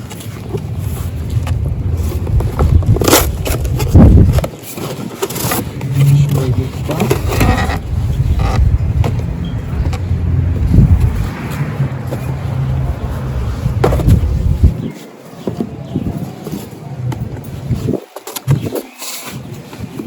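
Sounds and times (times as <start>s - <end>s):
parts scraping and rustling: 0.0s - 20.0s
steady low rumble: 0.4s - 4.5s, 5.9s - 14.9s.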